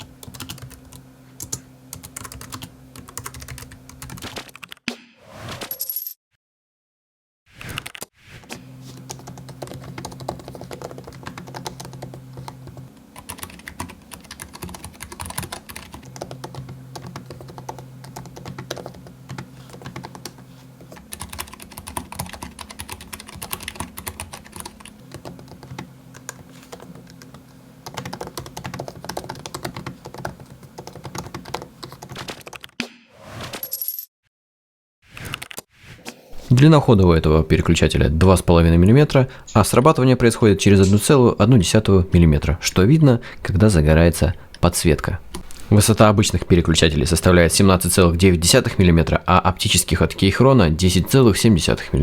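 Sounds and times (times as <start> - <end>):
fast typing on keyboard keys: 0.0 - 4.8, 9.0 - 32.8.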